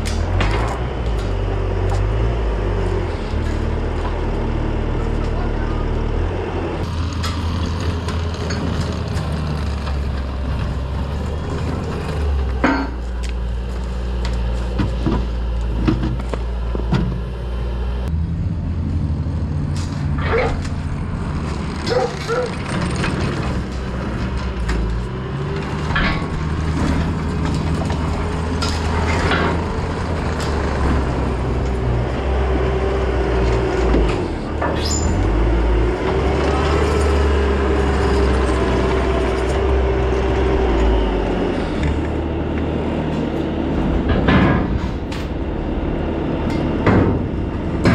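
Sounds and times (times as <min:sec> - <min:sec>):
metal clanks and knocks: 0:00.0 - 0:02.2, 0:06.8 - 0:13.5, 0:19.7 - 0:31.8, 0:43.0 - 0:47.9.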